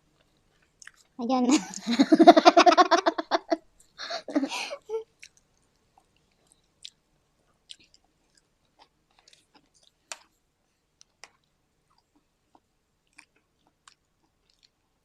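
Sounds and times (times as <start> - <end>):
person chewing food: 0.1 - 1.2, 5.0 - 15.0.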